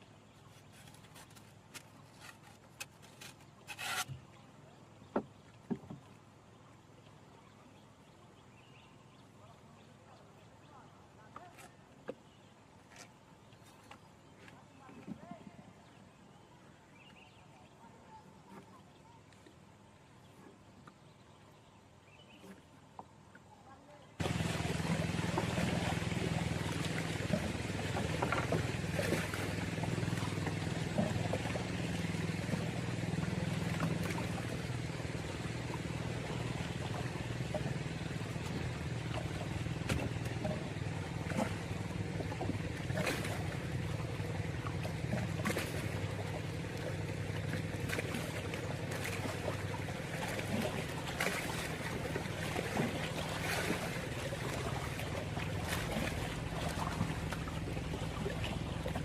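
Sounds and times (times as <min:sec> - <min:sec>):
water noise: 0:00.0 - 0:59.0
low motor hum: 0:18.3 - 0:59.0.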